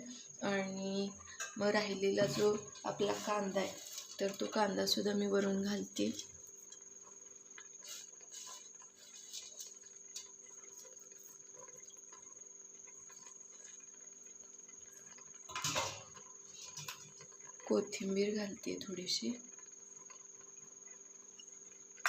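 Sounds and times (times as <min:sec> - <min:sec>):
fried onions rustling: 0:02.3 - 0:04.7, 0:07.8 - 0:12.2.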